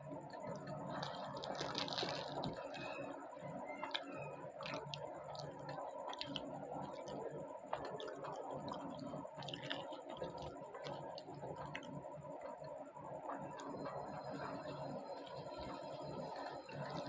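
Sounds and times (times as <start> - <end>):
person chewing with wet smacks: 0.4 - 12.6.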